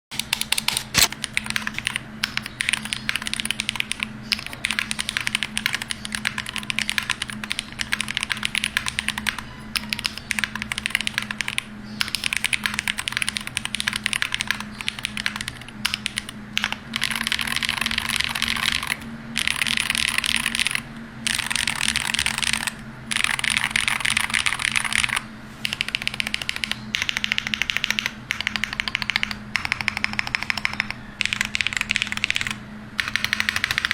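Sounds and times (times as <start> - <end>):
keyboard key clacks: 0.2 - 16.8.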